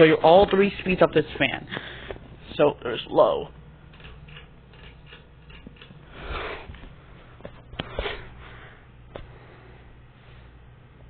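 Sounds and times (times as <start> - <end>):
ceiling fan humming: 0.0 - 11.0.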